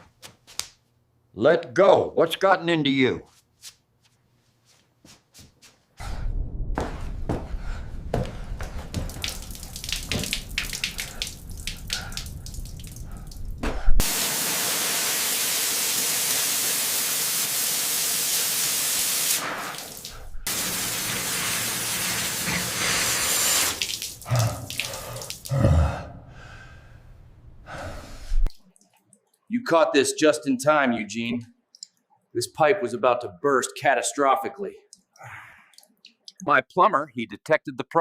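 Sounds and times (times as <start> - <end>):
heavy thumps: 6.3 - 9.2, 13.5 - 14.0
water hissing from leaking pipe: 8.6 - 25.6.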